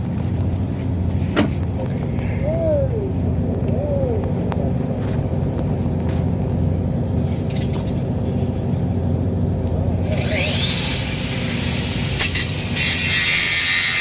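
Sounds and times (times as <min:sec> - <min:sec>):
engine humming: 0:00.0 - 0:14.0
hiss with rising whine: 0:10.0 - 0:14.0.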